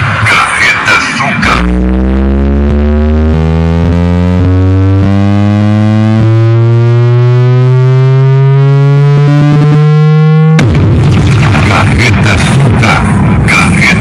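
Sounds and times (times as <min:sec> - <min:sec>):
distorted tone rising in pitch: 0:00.0 - 0:14.0.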